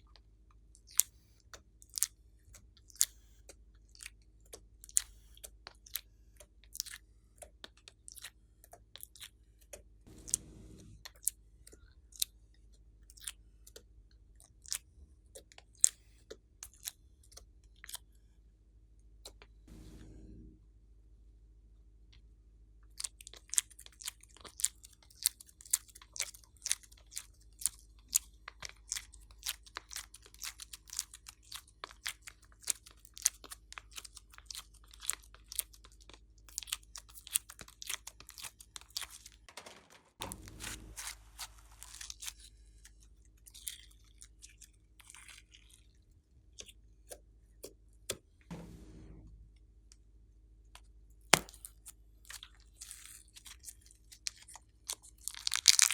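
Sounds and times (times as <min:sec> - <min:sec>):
rough squelching sound: 0:40.2 - 0:42.4
slime crackling and popping: 0:40.2 - 0:42.4, 0:51.4 - 0:55.9.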